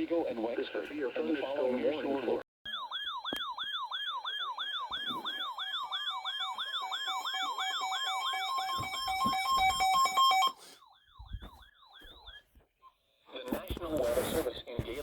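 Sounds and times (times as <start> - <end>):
electronic siren yelping: 2.7 - 12.6
pulsing beep tone: 4.4 - 12.4.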